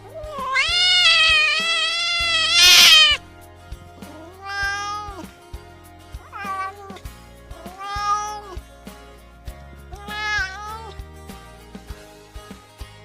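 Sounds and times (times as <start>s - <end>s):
cat meowing: 0.0s - 3.2s, 4.1s - 5.2s, 6.3s - 7.0s, 7.6s - 8.6s, 9.9s - 10.9s
soft background music: 0.0s - 13.0s.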